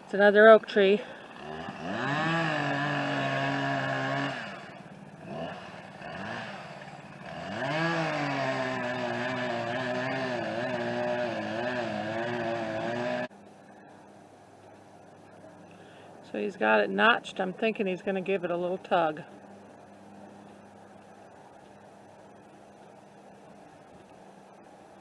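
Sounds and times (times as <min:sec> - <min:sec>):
chainsaw revving and cutting: 0:00.9 - 0:13.3.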